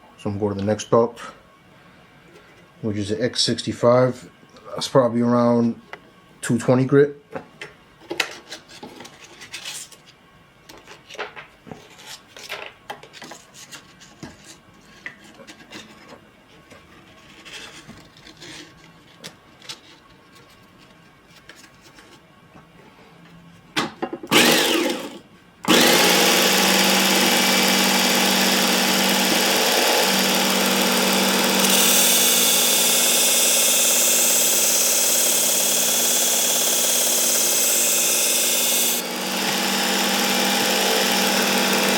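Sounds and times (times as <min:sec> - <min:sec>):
abrasive belt motor running: 0:24.3 - 0:41.9.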